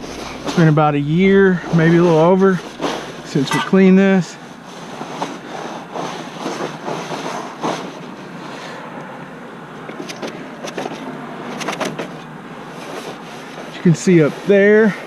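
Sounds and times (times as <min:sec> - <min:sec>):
pressure washer engine running: 0:00.0 - 0:05.0.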